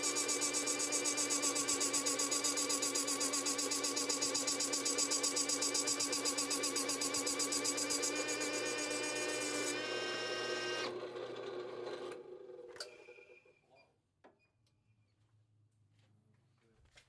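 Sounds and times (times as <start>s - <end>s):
power tools running: 0.0s - 13.0s.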